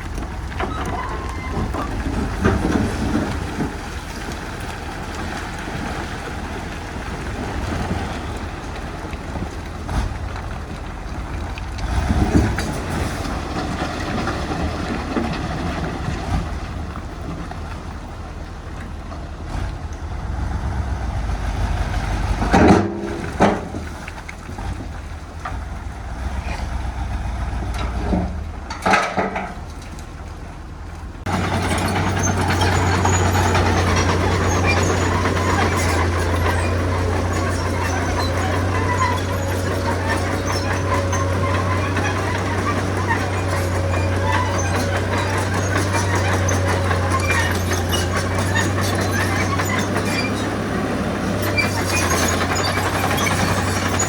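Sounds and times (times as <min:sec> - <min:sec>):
heavy diesel machinery rumbling: 0:00.0 - 0:54.0.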